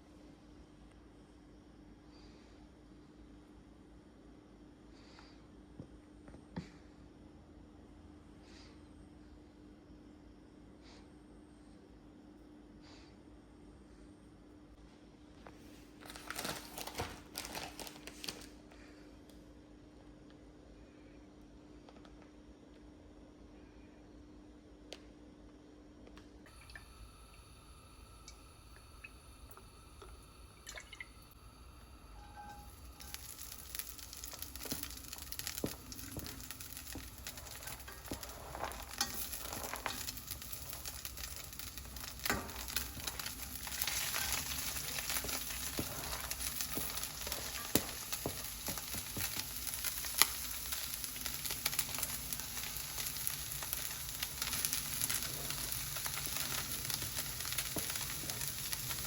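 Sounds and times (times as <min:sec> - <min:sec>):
food sizzling in oil: 0:26.6 - 0:59.0.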